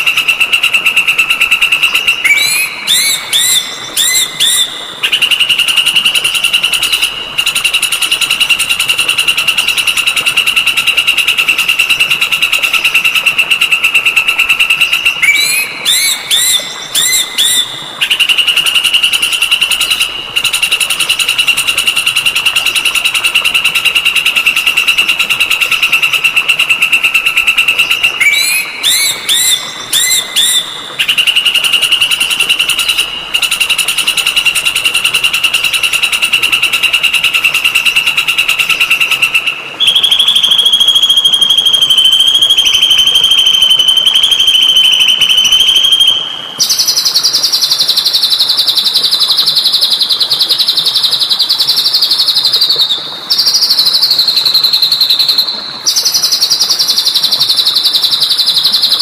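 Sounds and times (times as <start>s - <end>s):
songbird trilling: 0.0s - 5.5s, 14.3s - 21.4s, 27.0s - 34.6s, 37.8s - 48.4s
whistled bird notes: 0.0s - 7.8s, 13.8s - 20.8s, 27.0s - 36.0s, 38.8s - 59.0s.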